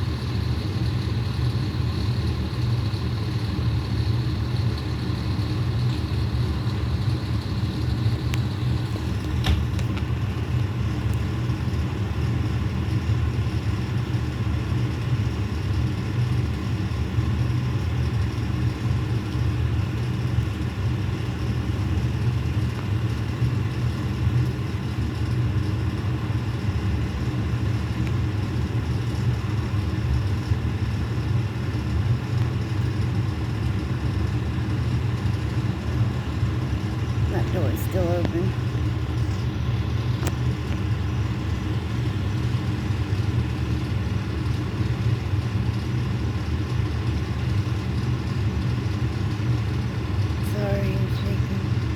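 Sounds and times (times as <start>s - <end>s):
truck engine idling: 0.0s - 11.1s.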